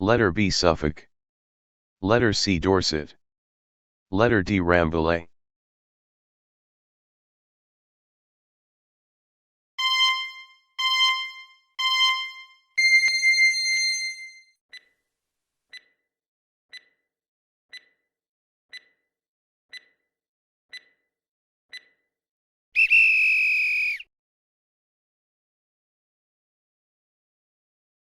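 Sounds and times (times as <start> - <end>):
longer higher tone: 9.8 - 14.4
loud buzzer tone: 9.8 - 14.4
short electronic beeps: 9.8 - 14.4
faint timer ticks: 14.7 - 15.0, 15.7 - 16.0, 16.7 - 17.1, 17.7 - 18.1, 18.7 - 19.1, 19.7 - 20.1, 20.7 - 21.1, 21.7 - 22.1.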